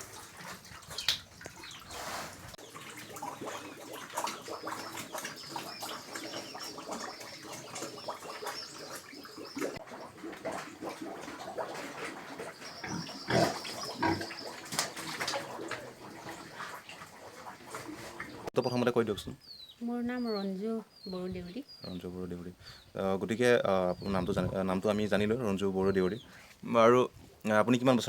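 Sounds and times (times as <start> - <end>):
pigs grunting and snuffling: 0.0 - 18.5
wet clicks and smacking: 0.9 - 1.6.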